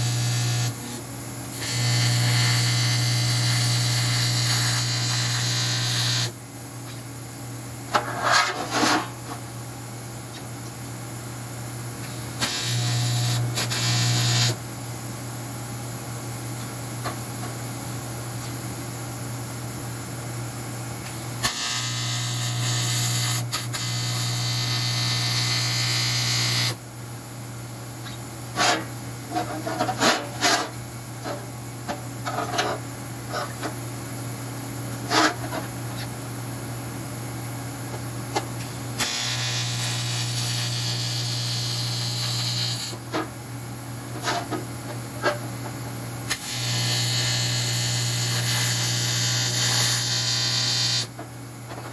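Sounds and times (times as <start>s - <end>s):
welding arc buzzing: 0.0s - 6.4s, 12.0s - 14.6s, 21.4s - 26.8s, 39.0s - 43.0s, 46.3s - 51.1s.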